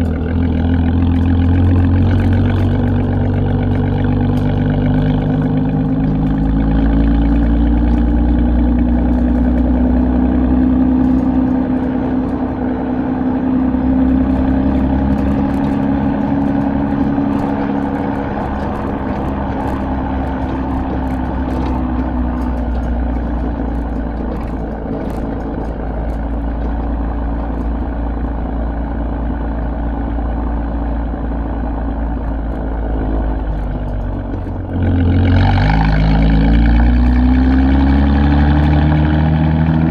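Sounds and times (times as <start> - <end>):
car exhaust running: 0.0 - 39.9.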